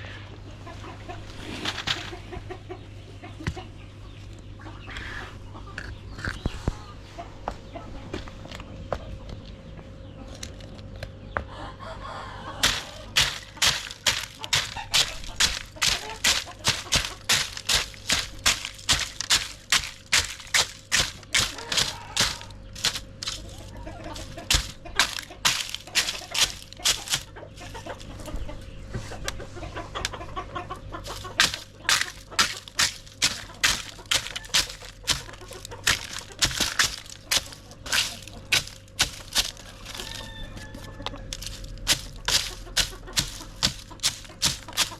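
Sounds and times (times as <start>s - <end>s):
chickens clucking: 0.0s - 44.9s.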